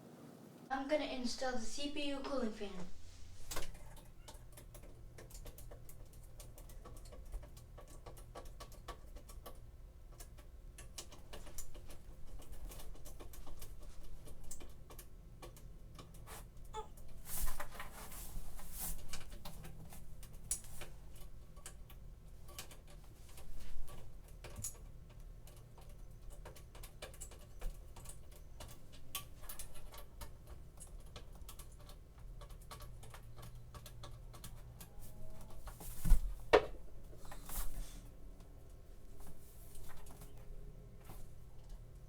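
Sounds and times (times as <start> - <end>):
light clicks and taps of handling: 18.8 - 42.0.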